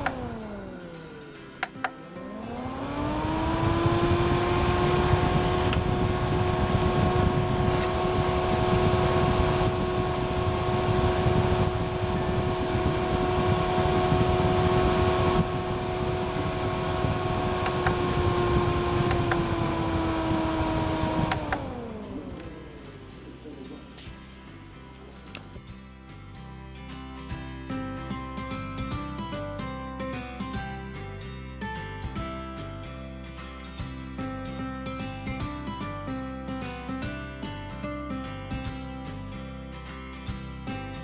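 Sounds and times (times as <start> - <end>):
small electric fan whining: 0.0 - 25.6.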